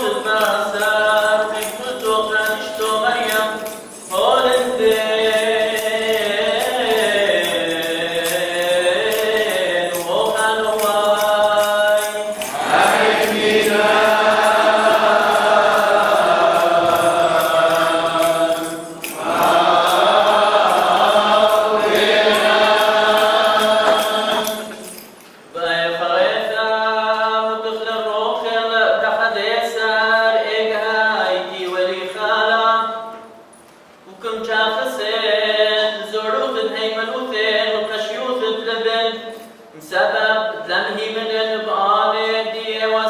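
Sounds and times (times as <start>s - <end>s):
person singing a chant: 0.0s - 25.0s.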